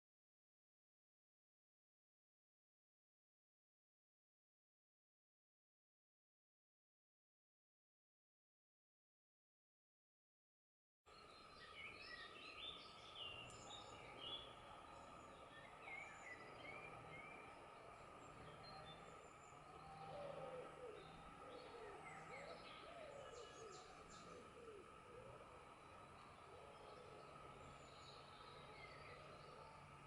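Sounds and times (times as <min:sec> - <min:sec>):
birds chirping and singing: 0:11.1 - 0:30.0
faint background hum: 0:11.1 - 0:30.0
low warbling bird calls: 0:11.1 - 0:30.0.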